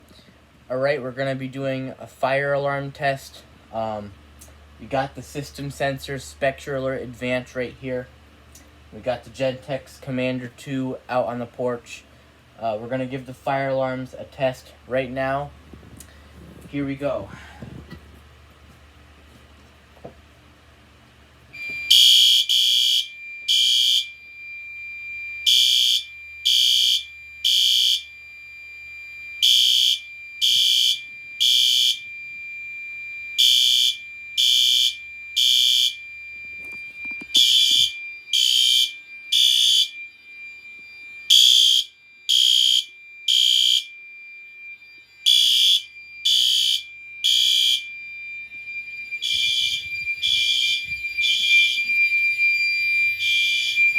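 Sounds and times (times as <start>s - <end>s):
fire alarm horn blasts: 4.6s - 17.9s, 21.5s - 53.9s
steady high tone: 21.6s - 53.9s.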